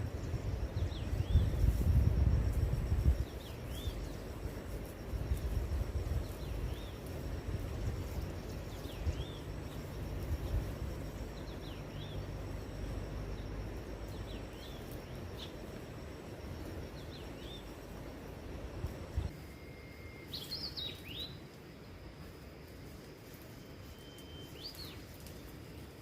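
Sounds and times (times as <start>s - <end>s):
steady low rumble: 0.0s - 20.2s
faint high insect drone: 0.0s - 26.0s
small bird chirping: 3.0s - 4.4s, 7.8s - 15.9s, 19.6s - 21.4s.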